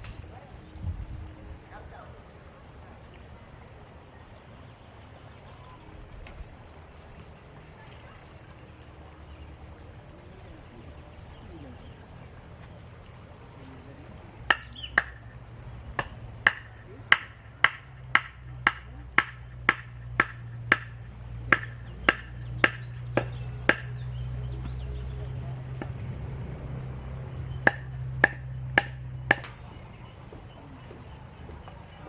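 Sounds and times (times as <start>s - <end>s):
sharp ringing knocks: 0.0s - 0.5s, 7.2s - 7.6s, 14.5s - 24.0s, 27.6s - 29.6s
steady low hum: 0.0s - 32.0s.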